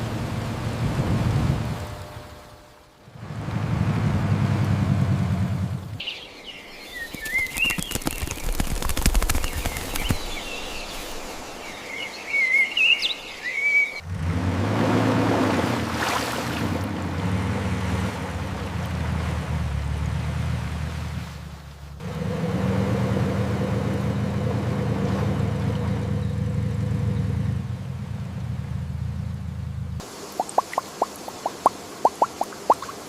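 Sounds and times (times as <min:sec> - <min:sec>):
small birds chirping: 0:06.0 - 0:14.0.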